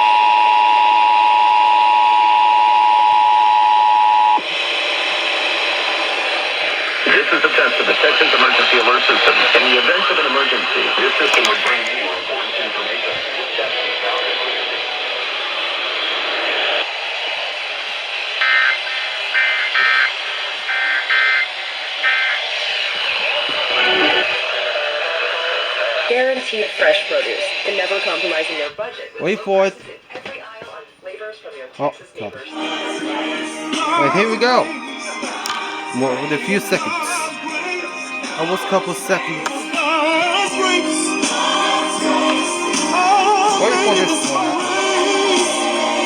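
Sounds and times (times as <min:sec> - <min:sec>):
two-tone alarm: 0:00.0 - 0:11.8, 0:12.6 - 0:24.8
radio hiss: 0:00.0 - 0:46.0
warbling digital tone bursts: 0:18.4 - 0:24.4.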